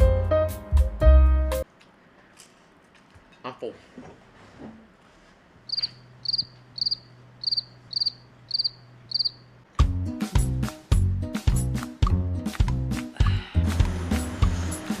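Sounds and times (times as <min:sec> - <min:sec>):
cricket chirping: 0:05.7 - 0:09.6
music with a heavy beat: 0:09.8 - 0:15.0.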